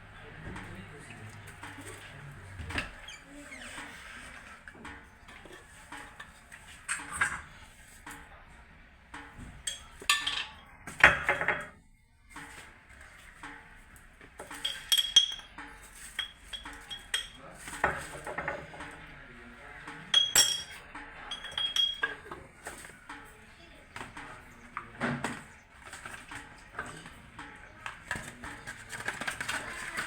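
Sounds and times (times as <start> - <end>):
dishes and cutlery clattering: 4.8 - 8.3, 9.2 - 11.8, 13.3 - 19.1, 19.8 - 23.4, 24.0 - 30.0.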